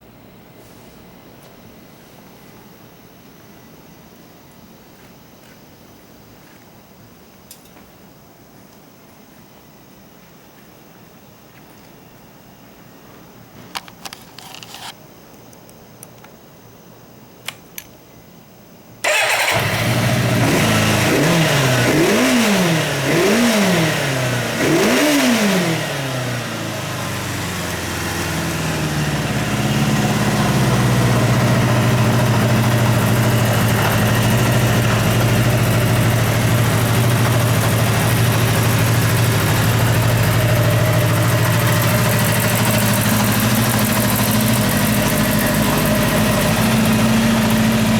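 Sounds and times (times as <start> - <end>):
motorcycle engine revving and idling: 19.0 - 47.9.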